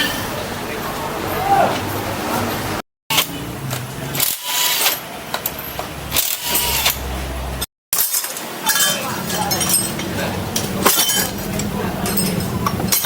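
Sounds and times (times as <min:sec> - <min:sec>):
small metal parts clinking: 0:04.2 - 0:07.0, 0:08.0 - 0:13.0
tools knocking on metal parts: 0:08.0 - 0:13.0.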